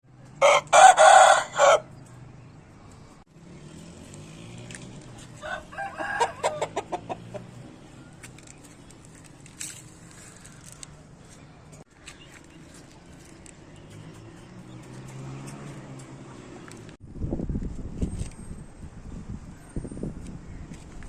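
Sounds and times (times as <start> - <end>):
rooster crowing: 0.4 - 1.9, 5.4 - 7.0
chicken clucking: 6.0 - 7.6.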